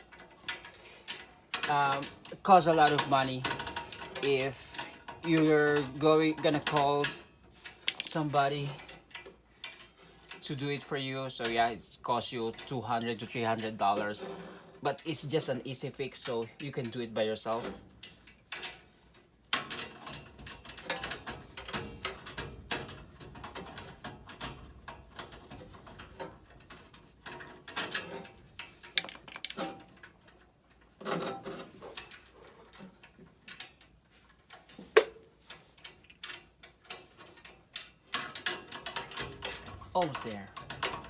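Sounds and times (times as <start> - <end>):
metallic clicks and knocks: 0.0 - 41.0.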